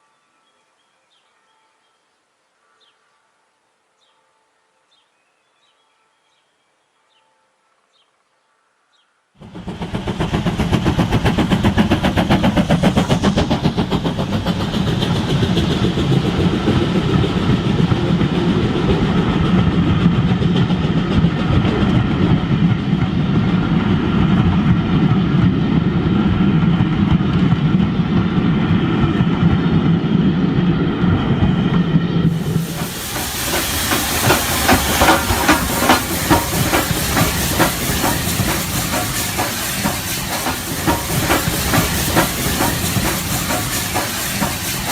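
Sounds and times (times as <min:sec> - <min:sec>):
model train clattering: 0:32.5 - 0:44.9.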